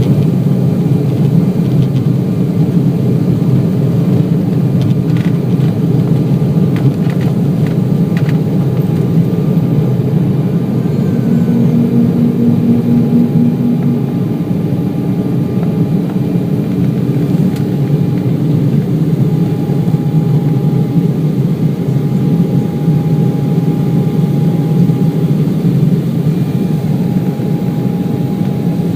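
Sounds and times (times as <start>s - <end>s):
jet engine climbing: 6.7s - 28.9s.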